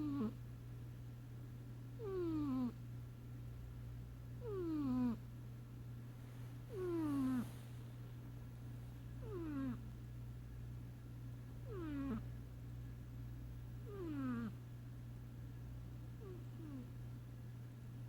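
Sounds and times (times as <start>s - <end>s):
cat snoring: 0.0s - 0.4s, 2.0s - 2.8s, 4.4s - 5.2s, 6.7s - 7.7s, 9.2s - 9.8s, 11.7s - 12.2s, 13.8s - 14.6s, 16.2s - 16.9s
steady low hum: 0.0s - 18.0s.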